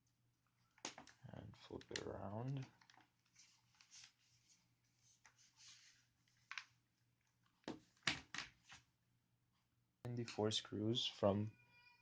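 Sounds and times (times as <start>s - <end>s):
laptop rustling: 0.6s - 8.9s.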